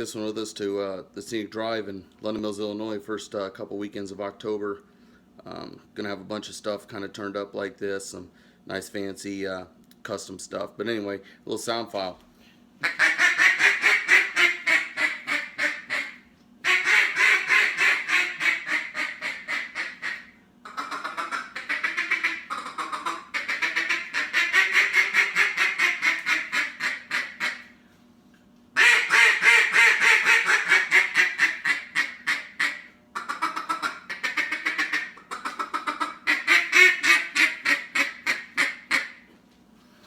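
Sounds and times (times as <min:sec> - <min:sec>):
duck call quacking: 0:12.8 - 0:27.7, 0:28.8 - 0:39.2.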